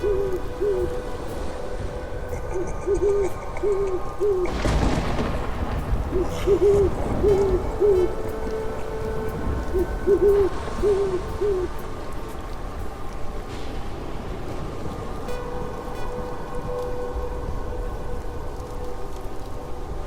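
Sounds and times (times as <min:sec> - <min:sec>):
owl hooting: 0:00.0 - 0:12.6
dark droning ambient music: 0:00.0 - 0:20.0.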